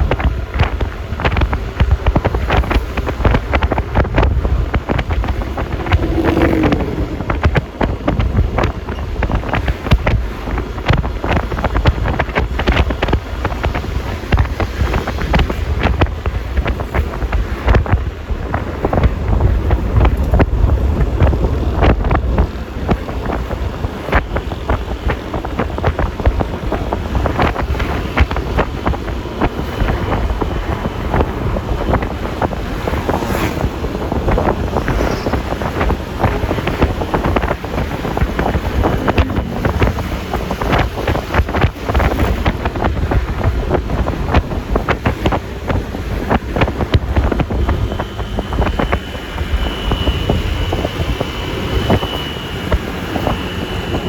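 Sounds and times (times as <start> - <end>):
road and engine noise: 0.0 - 54.0
wind buffeting microphone: 0.0 - 54.0.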